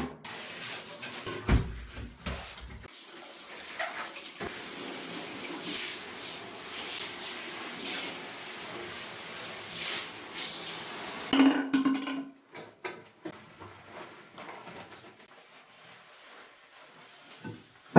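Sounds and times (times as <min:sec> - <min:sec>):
water spraying and splashing: 0:02.3 - 0:11.3.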